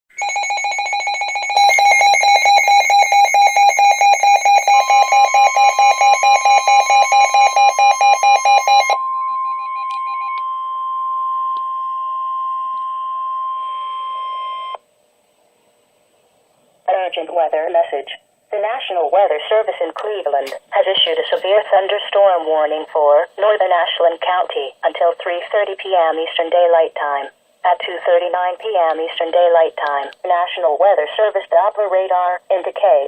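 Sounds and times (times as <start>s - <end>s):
rapid alarm beeps: 0.2s - 14.7s
steady warning alarm tone: 0.2s - 14.8s.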